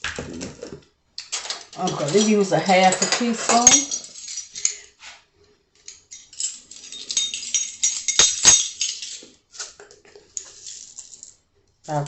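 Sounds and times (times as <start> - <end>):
metal spoon scraping container: 1.8 - 4.0.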